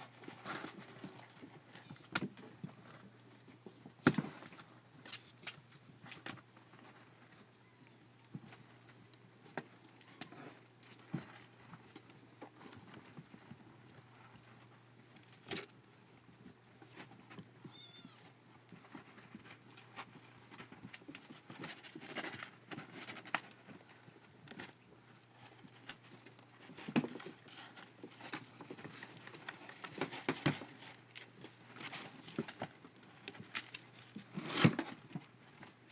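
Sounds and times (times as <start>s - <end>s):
kitten scratching in cat litter: 18.8s - 35.4s.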